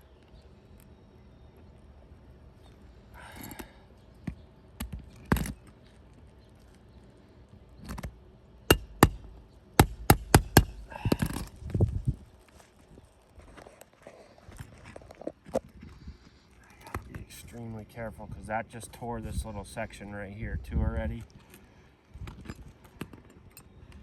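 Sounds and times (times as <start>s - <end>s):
sharp metal taps: 8.7s - 11.4s
scraping rustles under shingles: 10.7s - 17.8s.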